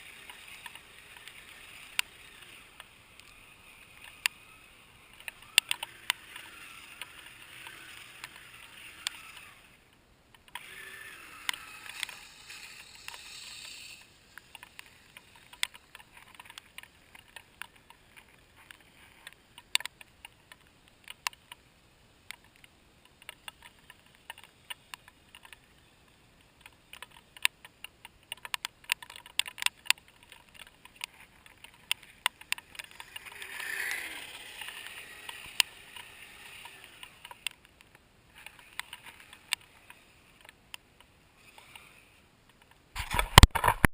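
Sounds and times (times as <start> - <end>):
electric motor whining: 0.0 - 9.8, 10.6 - 17.1, 32.8 - 37.5
tracks clicking and clattering: 0.0 - 21.7.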